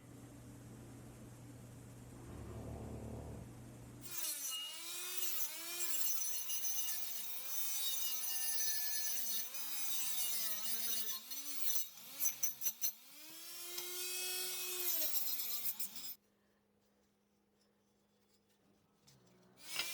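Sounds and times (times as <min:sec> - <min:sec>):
small power tool whining: 0:04.1 - 0:16.1, 0:19.6 - 0:19.9.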